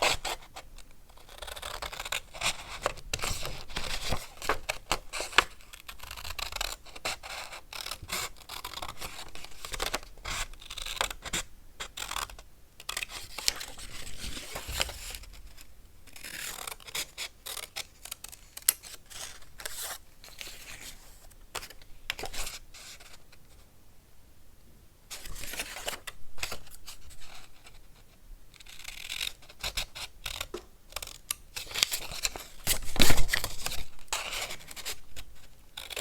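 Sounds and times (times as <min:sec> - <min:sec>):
paper snipping and rustling: 0:01.4 - 0:06.8, 0:30.2 - 0:35.0.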